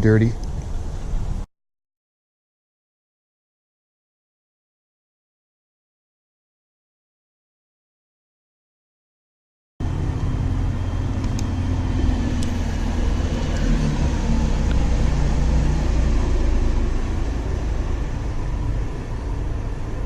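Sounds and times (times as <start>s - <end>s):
passing cars rumble: 0.0s - 1.5s, 9.8s - 20.0s.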